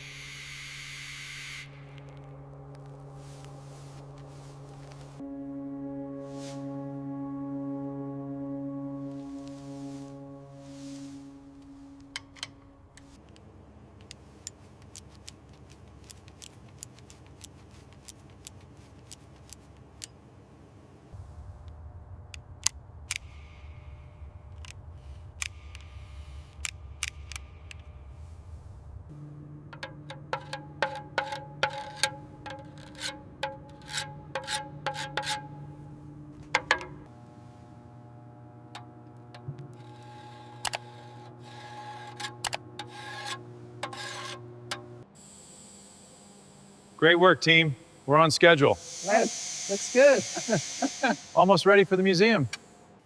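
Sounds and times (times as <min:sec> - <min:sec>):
low hum: 0:00.0 - 0:17.5, 0:19.7 - 0:45.4, 0:46.0 - 0:53.0
hand filing scraping: 0:30.3 - 0:35.5, 0:39.8 - 0:44.4.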